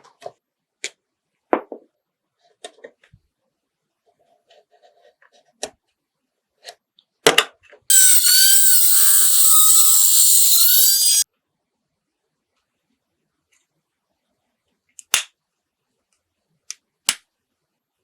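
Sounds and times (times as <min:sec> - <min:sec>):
handheld power tool whining: 0:07.9 - 0:11.2.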